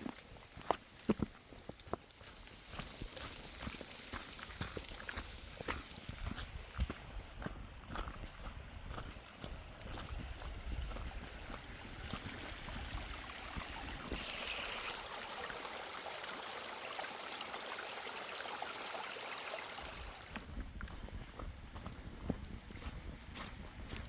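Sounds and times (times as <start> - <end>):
footsteps on forest trail: 0.0 - 14.7, 20.0 - 24.0
stream water rushing: 10.9 - 20.5.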